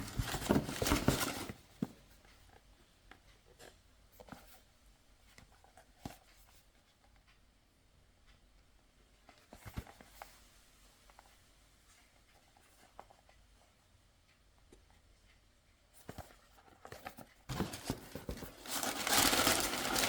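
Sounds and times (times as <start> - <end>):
packaging rustling: 0.0 - 1.6, 17.5 - 20.0.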